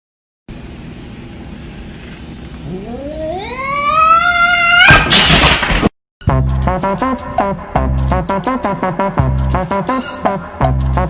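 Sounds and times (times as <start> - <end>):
cat yowling and screeching: 2.6 - 5.1.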